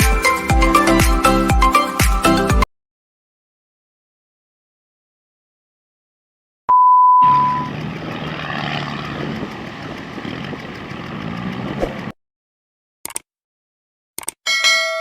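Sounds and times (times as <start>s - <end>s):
loud electronic beep: 6.7s - 7.8s
engine running: 7.2s - 12.2s.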